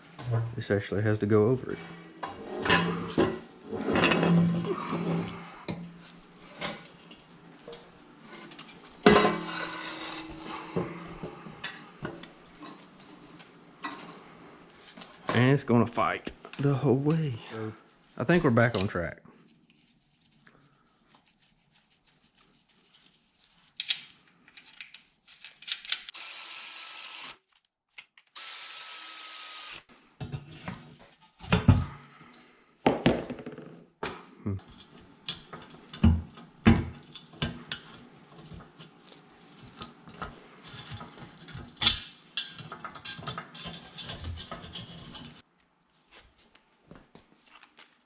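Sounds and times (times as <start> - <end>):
metal clanks and knocks: 9.0 - 11.0
power drill running: 26.1 - 27.4, 28.4 - 29.9.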